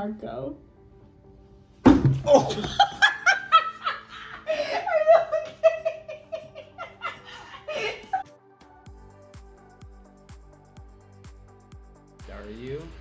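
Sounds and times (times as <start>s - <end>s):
hearty laughter: 2.2s - 8.2s.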